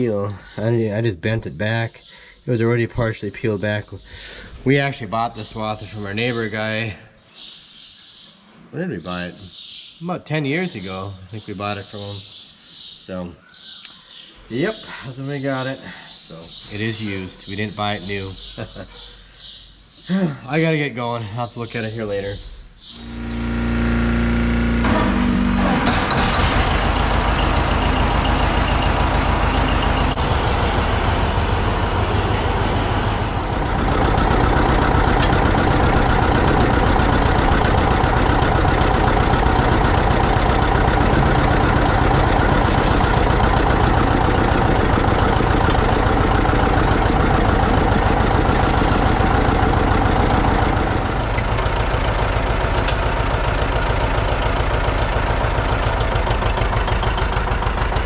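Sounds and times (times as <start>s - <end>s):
vehicle engine running: 22.8s - 58.0s.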